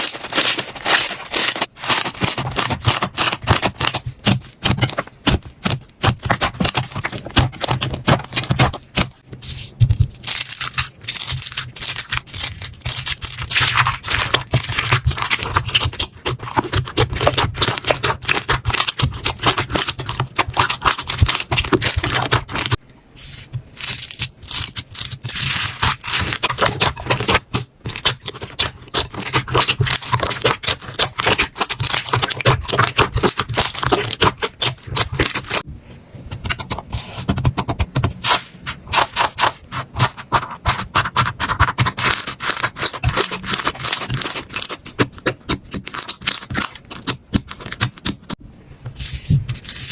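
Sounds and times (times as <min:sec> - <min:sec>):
slime crackling and popping: 0:10.1 - 0:22.8, 0:23.7 - 0:35.6.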